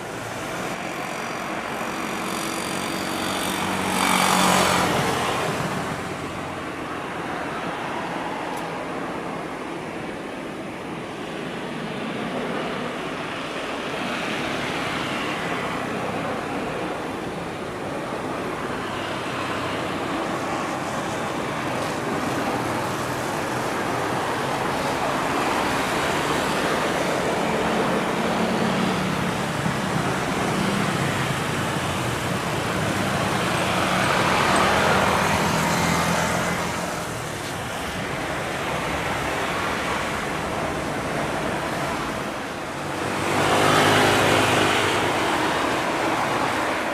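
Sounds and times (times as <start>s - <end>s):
jet engines rushing during landing: 0.0s - 46.9s.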